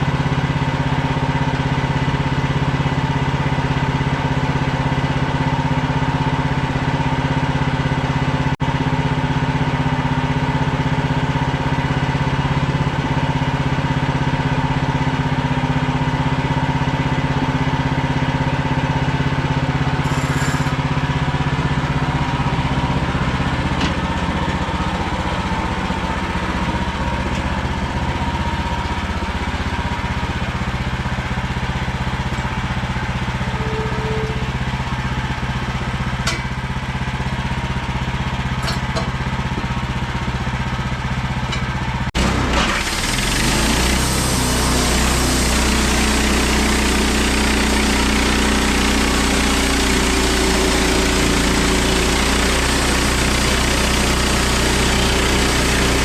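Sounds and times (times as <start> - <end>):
small engine running: 0.0 - 56.0.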